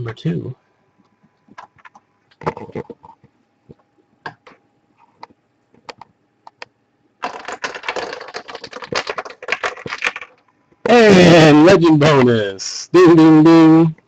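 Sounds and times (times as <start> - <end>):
cards clicking and tapping: 5.8 - 10.4.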